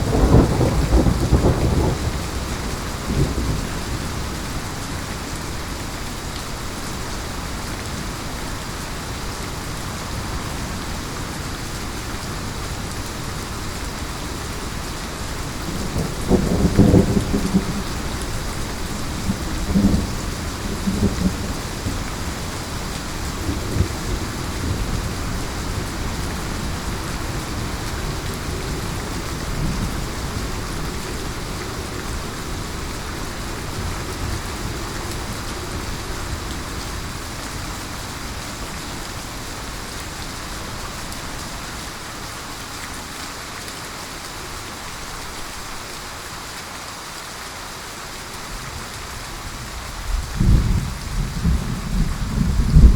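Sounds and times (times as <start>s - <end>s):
thunder rumbling: 0.0s - 4.0s, 15.5s - 37.2s, 50.0s - 52.9s
heavy rain hissing: 0.0s - 52.9s.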